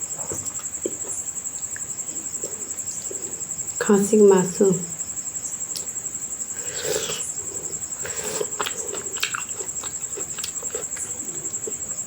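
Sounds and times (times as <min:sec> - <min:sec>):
cricket chirring: 0:00.0 - 0:12.0
chewing and lip-smacking: 0:06.9 - 0:12.0.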